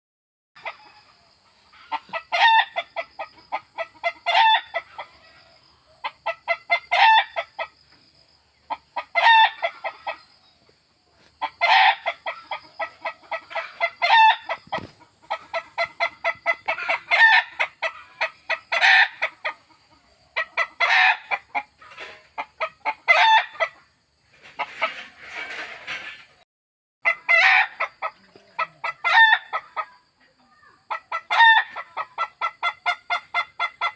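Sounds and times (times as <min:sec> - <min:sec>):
hen clucking: 0:00.6 - 0:08.0, 0:08.6 - 0:10.3, 0:11.3 - 0:25.9, 0:27.0 - 0:33.9.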